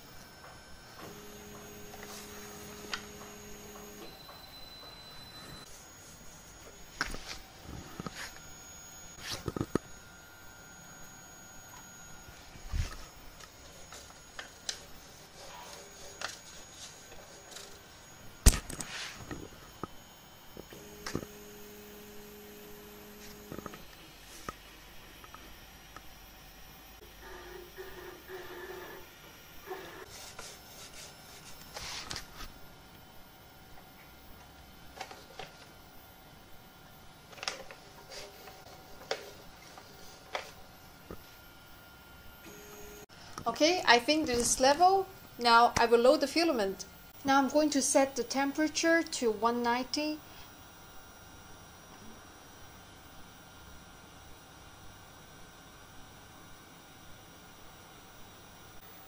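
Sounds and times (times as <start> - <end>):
faint printer hum: 0.0 - 59.0.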